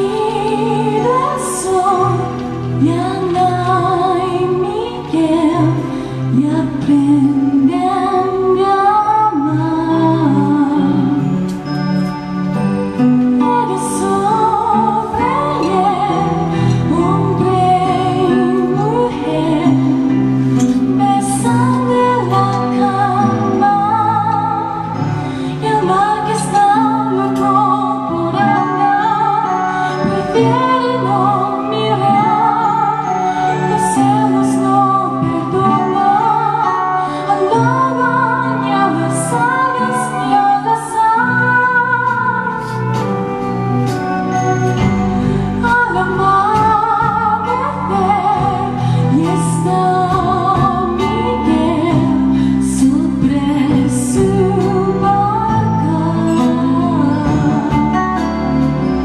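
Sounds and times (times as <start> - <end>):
woman singing a slow song: 0.0 - 12.2, 13.0 - 44.1, 44.8 - 59.0
instrumental accompaniment: 0.0 - 59.0.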